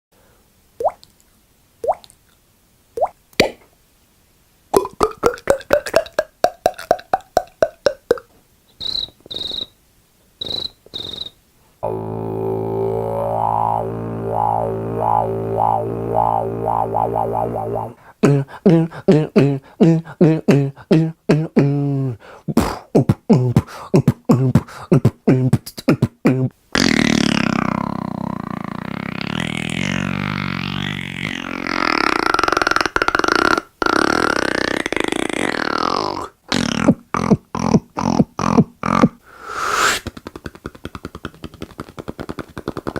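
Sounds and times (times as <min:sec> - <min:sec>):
low droning buzz with wobble: 0:11.8 - 0:18.0
pulses rising and falling in pitch: 0:11.8 - 0:18.0
rapid bouncing pulses: 0:11.8 - 0:18.0
rising bloops: 0:11.8 - 0:18.8.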